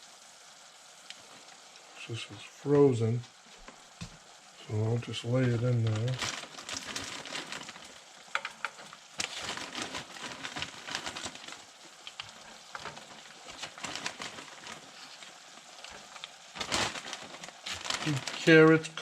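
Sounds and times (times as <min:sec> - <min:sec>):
meat and onions sizzling in a pan: 0:00.0 - 0:19.0
sharp clicks and pops: 0:08.3 - 0:09.3, 0:12.0 - 0:13.7.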